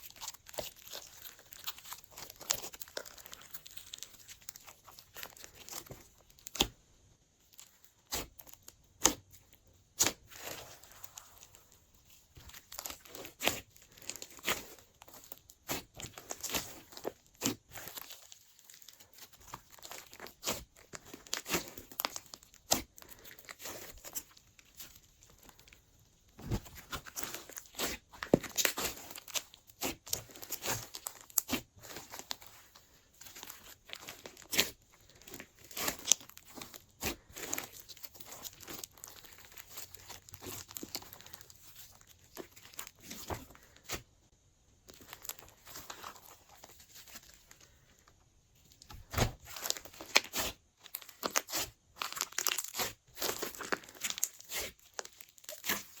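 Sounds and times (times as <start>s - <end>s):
slime squished by hand: 12.1s - 44.1s, 48.8s - 56.0s.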